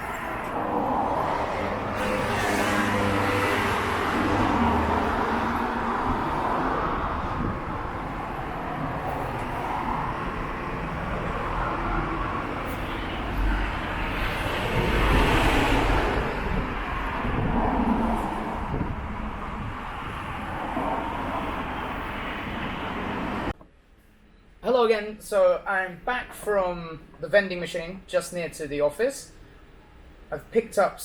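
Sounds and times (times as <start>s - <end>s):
road traffic rumble: 0.0s - 23.6s.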